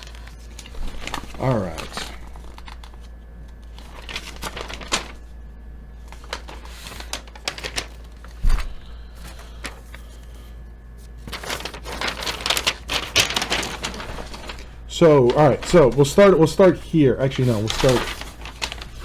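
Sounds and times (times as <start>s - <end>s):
rustling: 3.7s - 5.3s, 6.0s - 19.0s.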